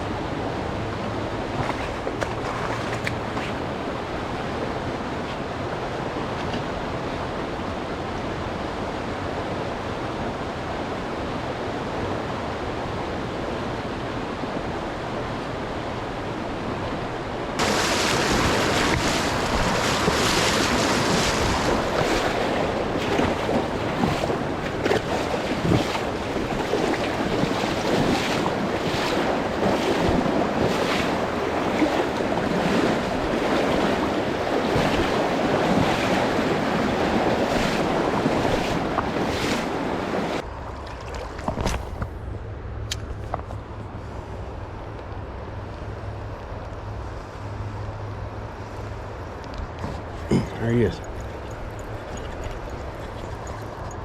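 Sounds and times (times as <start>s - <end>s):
river water rushing: 0.0s - 41.5s, 49.8s - 54.0s.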